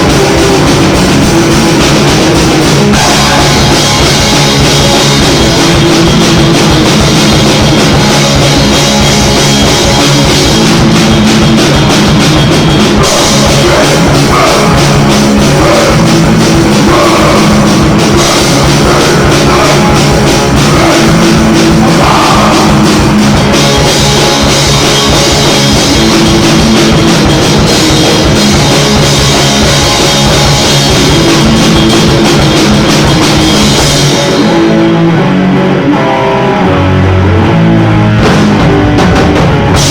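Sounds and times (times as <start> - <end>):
drum kit: 0.0 - 39.9
electric guitar: 0.0 - 39.9
heavy rock band playing: 0.0 - 39.9.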